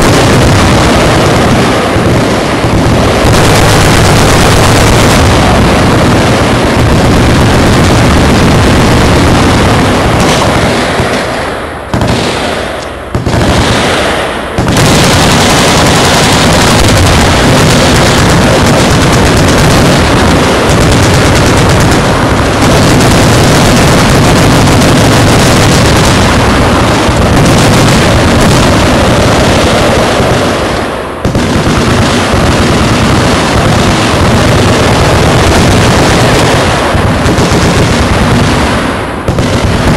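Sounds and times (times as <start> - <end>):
machine guns firing: 0.0 - 39.9.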